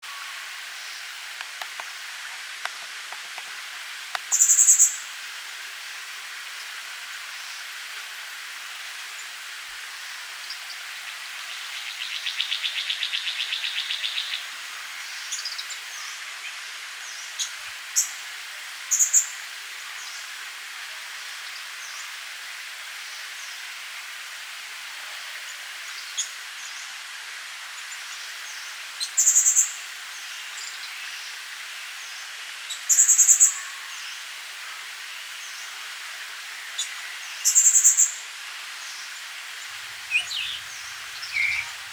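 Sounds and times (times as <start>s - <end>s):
insects hissing: 0.1s - 41.9s
small birds chirping: 2.7s - 5.1s, 28.1s - 31.3s, 36.7s - 38.2s, 38.8s - 41.9s
bird trill: 39.7s - 41.9s.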